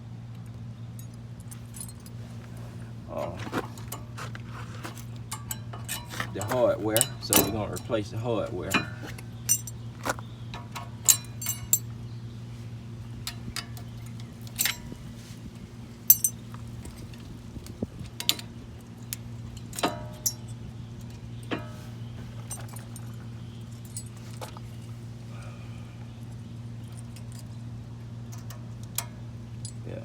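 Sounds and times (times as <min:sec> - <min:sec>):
steady low hum: 0:00.0 - 0:30.0
light metallic clinks and taps: 0:01.0 - 0:02.6, 0:03.2 - 0:08.0, 0:08.7 - 0:12.0, 0:13.2 - 0:15.0, 0:16.1 - 0:17.3, 0:18.2 - 0:24.9, 0:28.3 - 0:29.8.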